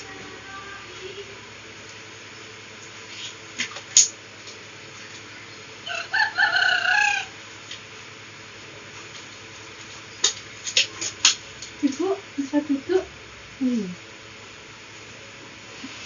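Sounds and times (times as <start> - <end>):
rooster crowing: 5.8 - 7.4.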